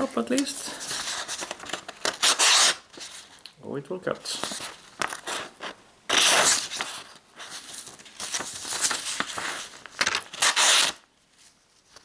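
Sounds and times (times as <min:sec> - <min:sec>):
knife slicing through paper: 0:08.3 - 0:11.0.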